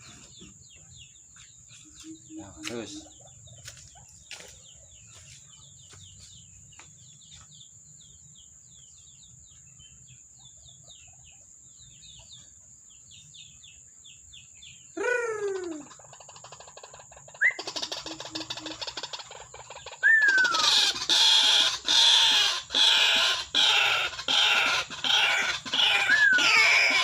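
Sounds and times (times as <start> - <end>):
bird chirps sliding downward: 20.0 - 20.8, 25.8 - 27.0
loud falling bird call: 20.0 - 27.0.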